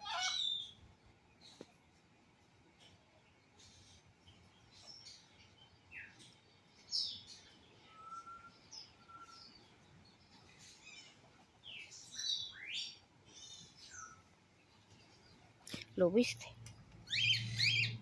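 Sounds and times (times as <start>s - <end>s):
parrots chirping and calling: 0.0s - 0.8s, 17.0s - 18.0s
short low whistles: 7.9s - 9.4s.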